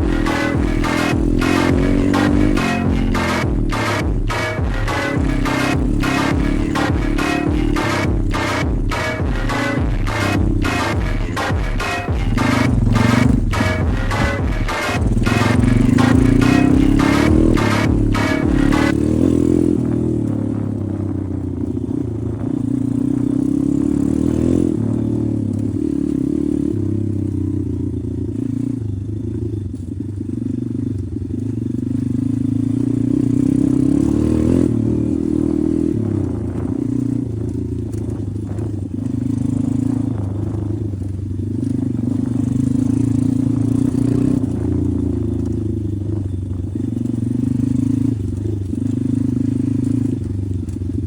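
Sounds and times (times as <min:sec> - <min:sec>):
pit bike engine revving: 0:00.0 - 0:51.0.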